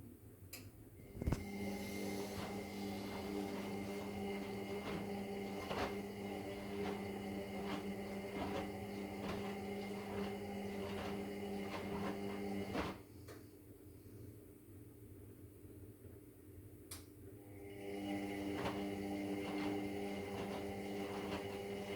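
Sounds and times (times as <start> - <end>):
washing machine motor hum: 1.0 - 13.5, 17.4 - 21.9.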